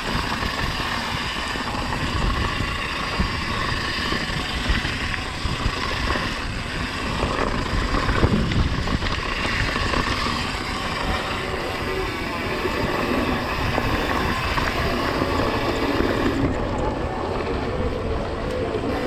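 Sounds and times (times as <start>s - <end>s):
bike rattling over bumps: 0.0s - 19.0s
tyres rumbling on dirt: 0.0s - 19.0s
wind on microphone: 0.0s - 19.0s.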